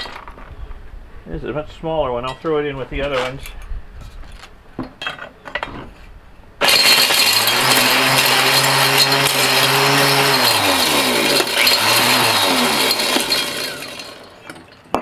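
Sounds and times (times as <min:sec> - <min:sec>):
loud clattering grind: 0:00.0 - 0:00.8, 0:01.5 - 0:15.0
crusher motor hum: 0:06.6 - 0:14.7.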